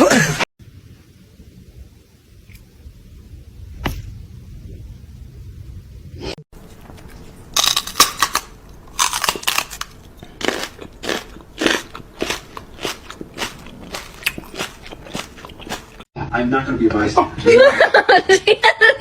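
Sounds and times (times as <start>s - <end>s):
crunchy chewing: 6.6s - 16.1s.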